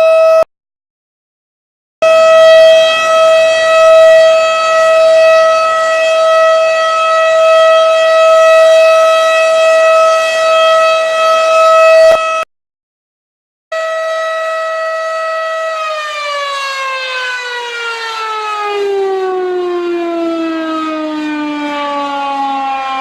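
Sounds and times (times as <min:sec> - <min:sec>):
warning siren steady tone: 0:00.0 - 0:00.5, 0:02.0 - 0:12.5, 0:13.7 - 0:23.0.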